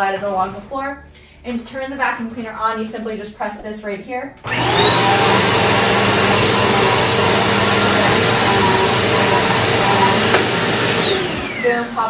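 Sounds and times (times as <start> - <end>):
vacuum cleaner running: 4.4 - 12.0.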